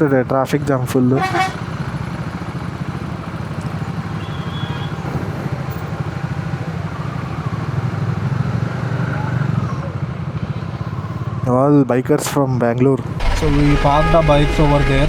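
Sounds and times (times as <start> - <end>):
motorcycle engine running: 13.1 - 15.0.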